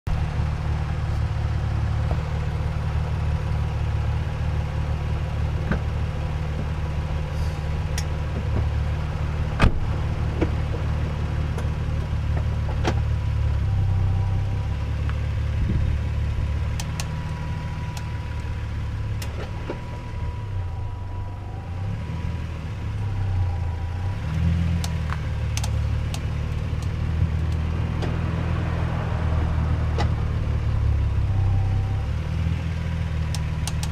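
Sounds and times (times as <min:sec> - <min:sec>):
car engine low rumble: 0:00.0 - 0:33.9.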